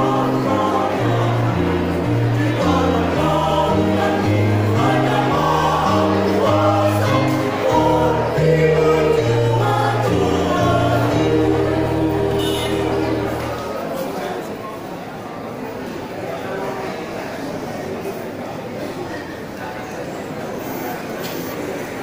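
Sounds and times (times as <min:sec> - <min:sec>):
choir singing in parts: 0:00.0 - 0:13.9
low bass line: 0:06.8 - 0:13.6.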